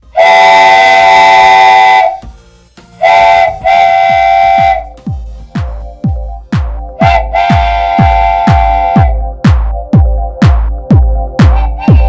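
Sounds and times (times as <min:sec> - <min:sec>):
electronic dance beat: 0:00.0 - 0:12.0
sustained horn-like synth chord: 0:00.1 - 0:02.3, 0:03.0 - 0:05.0, 0:07.0 - 0:09.4, 0:11.4 - 0:12.0
deep kick drums falling in pitch: 0:03.2 - 0:12.0.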